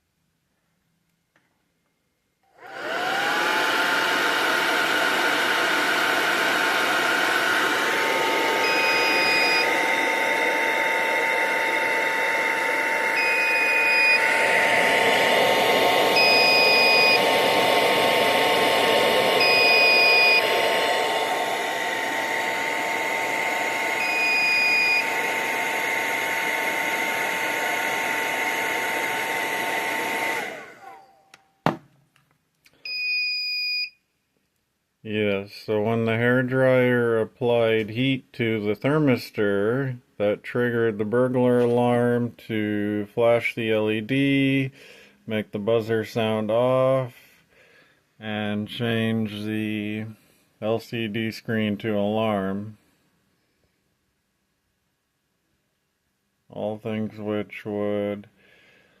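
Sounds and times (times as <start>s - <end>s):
hair dryer blowing: 2.6s - 31.1s
alarm buzzer high beeps: 8.6s - 10.4s, 11.4s - 14.4s, 16.1s - 17.3s, 19.4s - 20.5s, 24.0s - 25.1s.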